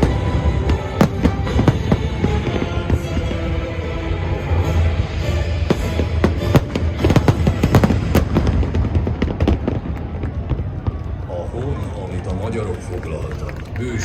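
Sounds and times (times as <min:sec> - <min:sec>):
music: 0:00.0 - 0:11.0
fireworks cracks and bangs: 0:00.0 - 0:14.0.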